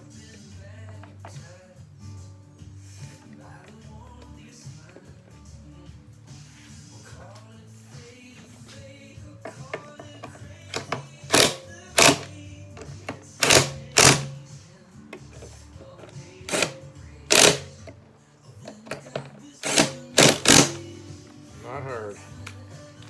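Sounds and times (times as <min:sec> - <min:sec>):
quiet background music: 0:00.0 - 0:23.0.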